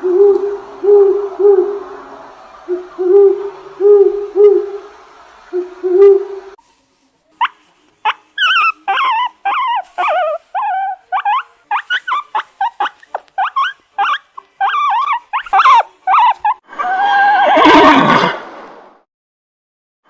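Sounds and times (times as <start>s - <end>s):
puppy yipping: 7.4s - 16.6s
dog calling: 7.4s - 17.6s
puppy whining: 7.4s - 17.7s.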